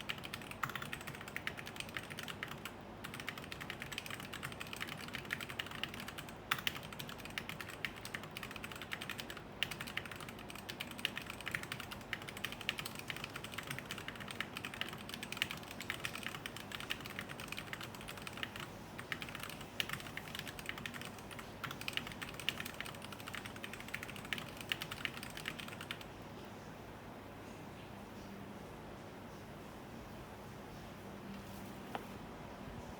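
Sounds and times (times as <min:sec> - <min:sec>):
fast mechanical keyboard typing: 0:00.0 - 0:26.1.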